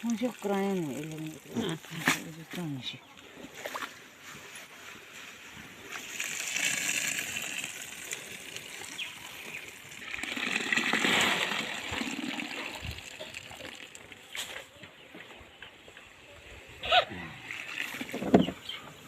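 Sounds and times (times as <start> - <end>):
water running and splashing: 0.0 - 2.9, 5.8 - 14.3, 17.3 - 19.0.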